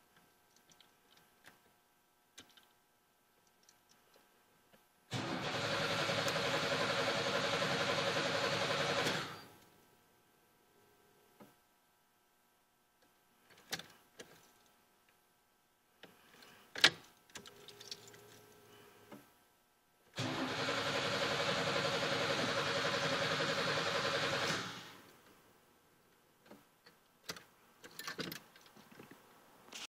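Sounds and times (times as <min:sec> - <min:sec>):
car engine cranking on starter: 0:05.1 - 0:09.5, 0:20.2 - 0:25.0.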